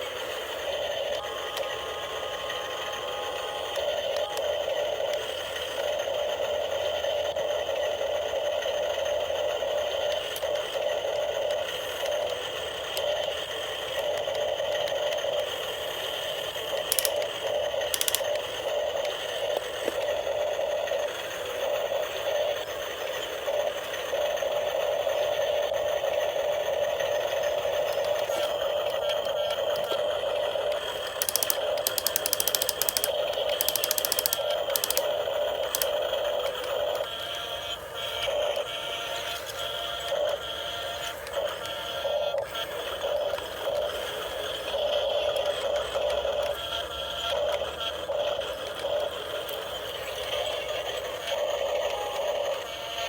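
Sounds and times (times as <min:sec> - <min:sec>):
small electric motors whirring: 0:00.0 - 0:53.0
sharp clicks: 0:16.6 - 0:20.1, 0:27.4 - 0:37.0.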